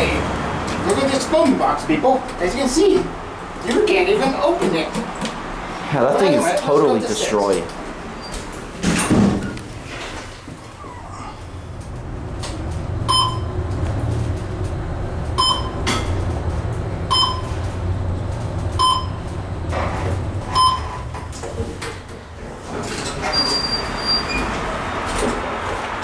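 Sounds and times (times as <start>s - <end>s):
elevator low rumble: 0.0s - 6.0s, 7.0s - 26.0s
short electronic beeps: 13.1s - 13.5s, 15.4s - 15.8s, 17.1s - 17.5s, 18.8s - 19.2s, 20.6s - 20.9s.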